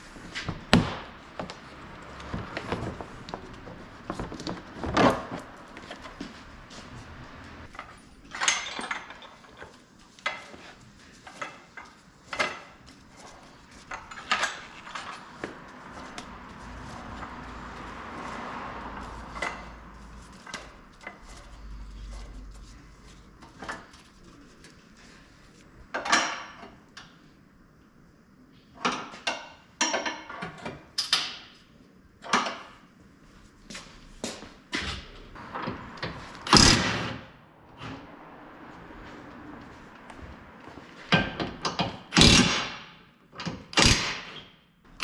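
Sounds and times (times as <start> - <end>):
tools knocking and clunking: 0.4 - 6.2, 41.0 - 44.5.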